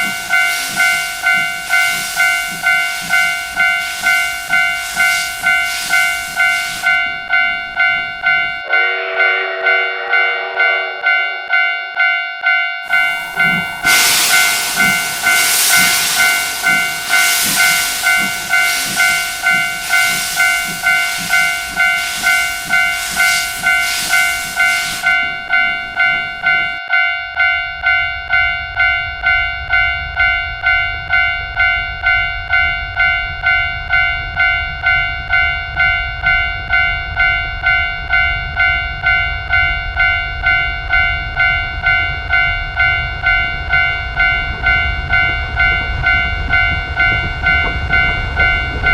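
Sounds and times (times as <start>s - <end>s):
steam locomotive chuffing: 0.0s - 26.8s, 37.6s - 48.9s
low train rumble: 0.0s - 48.9s
railway crossing alarm bell: 0.0s - 48.9s.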